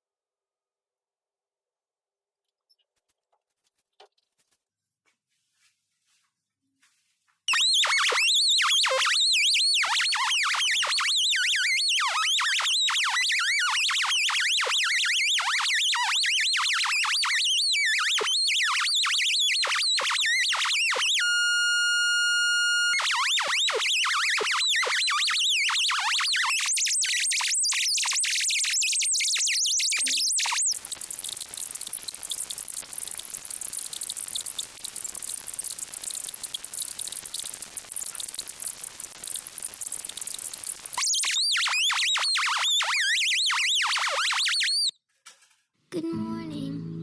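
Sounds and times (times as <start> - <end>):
rapid electronic chirps: 7.5 - 44.9.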